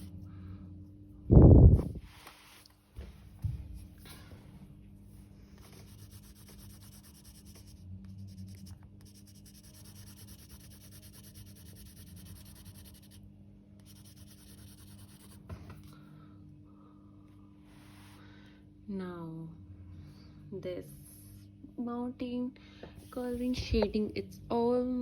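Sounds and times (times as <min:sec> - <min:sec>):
faint steady hum: 0:00.0 - 0:25.0
pencil shading on paper: 0:05.6 - 0:13.2, 0:13.8 - 0:15.4.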